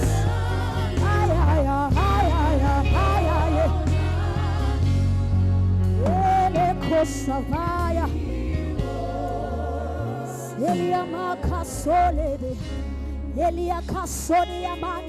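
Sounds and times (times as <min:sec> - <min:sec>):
person singing with vibrato: 0:00.0 - 0:05.3, 0:06.0 - 0:12.7
sustained low chords: 0:00.0 - 0:13.8.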